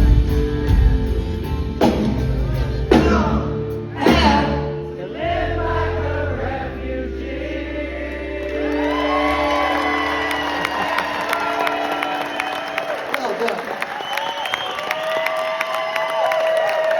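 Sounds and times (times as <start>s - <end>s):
drums and cymbals crashing: 0.0s - 4.8s
live rock band: 0.0s - 5.0s
crowd cheering: 8.0s - 16.9s.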